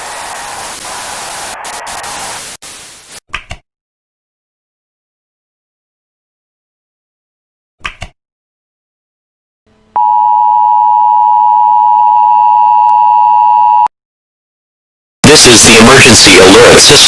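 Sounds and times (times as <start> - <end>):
loud steady alert tone: 15.2 - 17.0.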